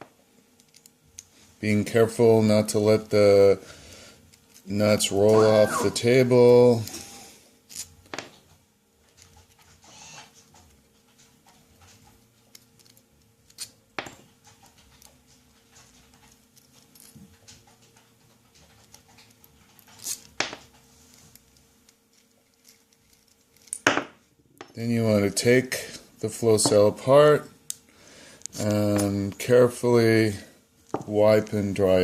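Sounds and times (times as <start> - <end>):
faint steady hum: 0.0 - 32.0
metal parts clicking and tapping: 22.1 - 24.0.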